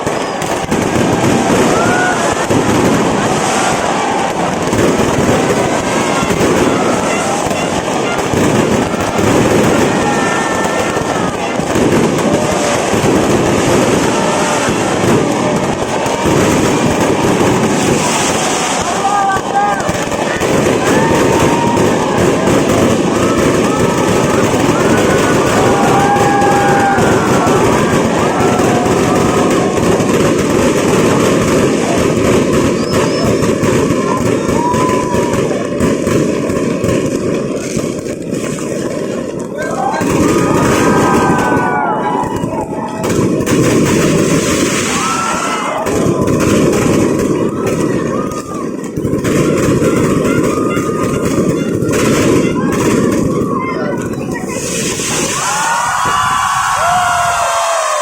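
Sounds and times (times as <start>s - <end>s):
fireworks crackling: 0.0s - 58.0s
short whistling tones: 32.8s - 33.4s.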